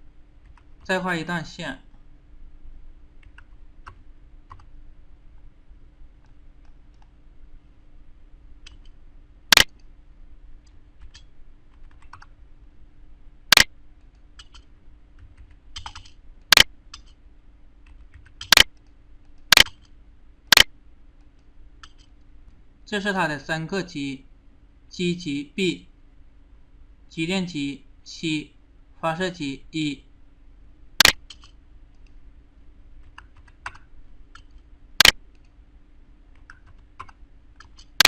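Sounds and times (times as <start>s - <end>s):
low electrical hum: 0.0s - 38.0s
computer mouse clicks: 3.2s - 4.7s, 6.2s - 7.2s, 8.6s - 9.9s, 10.6s - 12.3s, 13.5s - 17.2s, 17.8s - 22.2s, 31.0s - 32.2s, 33.0s - 35.6s, 36.3s - 38.0s.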